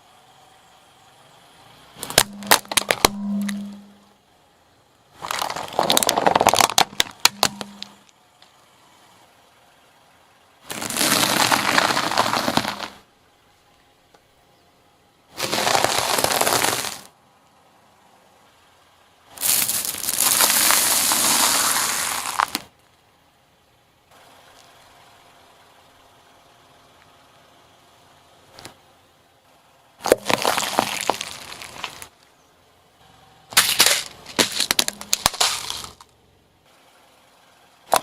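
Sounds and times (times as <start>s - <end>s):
things crushed under car tyre: 2.0s - 3.8s, 5.2s - 8.0s, 10.7s - 13.0s, 15.4s - 17.1s, 19.4s - 22.7s, 30.0s - 32.1s, 33.5s - 36.1s.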